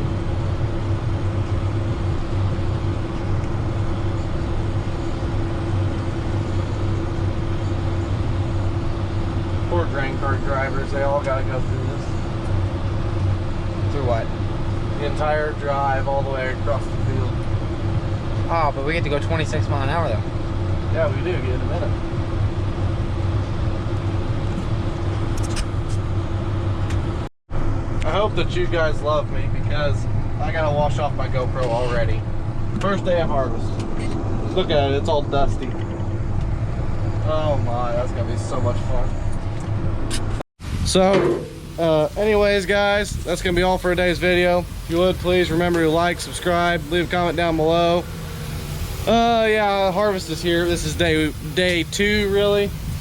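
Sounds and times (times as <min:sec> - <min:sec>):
constant hum: 0:00.0 - 0:53.0
tractor engine running: 0:00.0 - 0:53.0
tractor engine running under load: 0:41.4 - 0:53.0.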